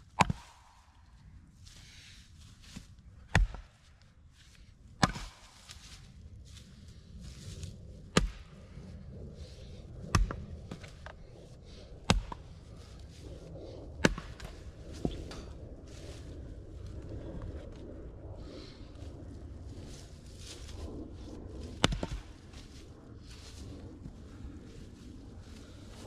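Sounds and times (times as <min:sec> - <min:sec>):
axe splitting wood: 0:05.0 - 0:05.4.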